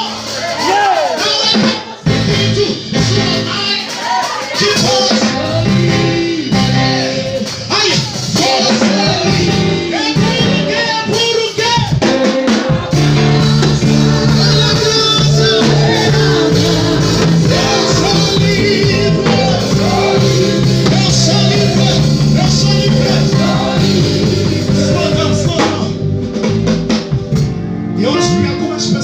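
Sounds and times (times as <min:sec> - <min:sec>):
band accompaniment: 0:00.0 - 0:29.0
person singing: 0:12.1 - 0:25.9.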